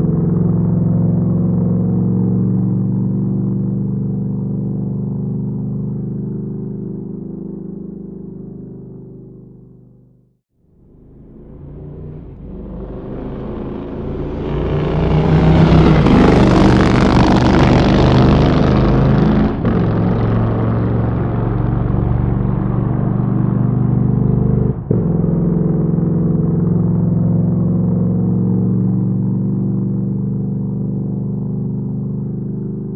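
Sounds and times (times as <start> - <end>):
motorcycle engine revving: 0.0 - 32.9.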